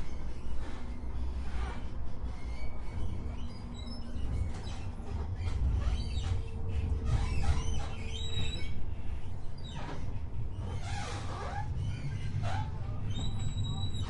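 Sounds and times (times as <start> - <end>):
high squeaks and squeals: 0.3 - 10.0, 10.6 - 14.0
tram rumbling: 2.7 - 14.0.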